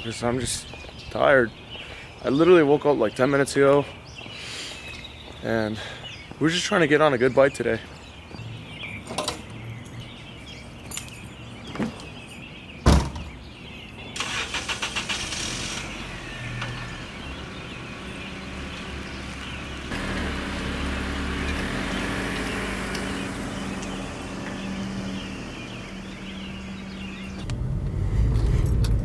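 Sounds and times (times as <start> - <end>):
sharp thump: 12.9 - 13.4
car engine cranking: 14.2 - 29.0
car engine running: 14.5 - 29.0.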